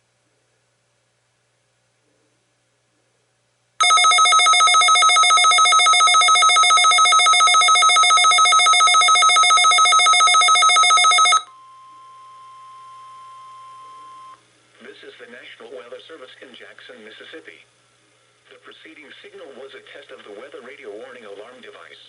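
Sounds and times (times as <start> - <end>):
pulsing multi-tone alert beeping: 3.8 - 11.5
faint steady tone: 3.8 - 14.5.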